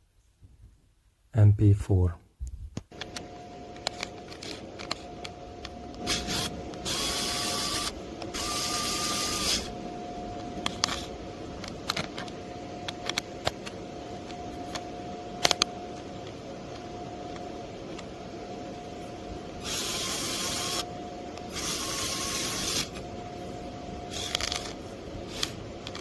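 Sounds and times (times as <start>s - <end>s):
faint steady whine: 0.0s - 26.0s
electric screwdriver motor: 6.0s - 9.7s, 19.6s - 20.9s, 21.5s - 23.0s, 24.1s - 26.0s
scattered clicks: 11.6s - 18.1s.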